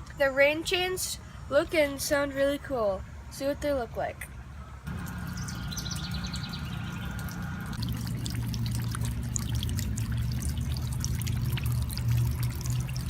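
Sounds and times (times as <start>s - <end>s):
steady low hum: 4.5s - 13.0s
small splashes: 4.9s - 13.0s
water trickling and dripping: 4.9s - 13.0s.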